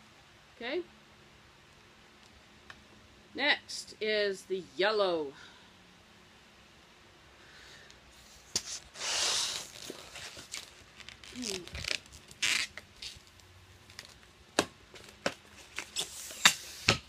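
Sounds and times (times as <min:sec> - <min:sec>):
balloon inflating air rushes: 0:08.8 - 0:09.8
rubbery balloon squeak: 0:11.2 - 0:13.3.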